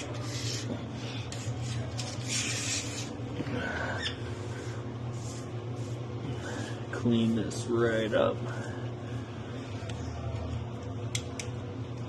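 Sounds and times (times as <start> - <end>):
scraper rasping on floor: 0.0 - 3.1, 4.5 - 7.4
steady low hum: 0.0 - 12.0.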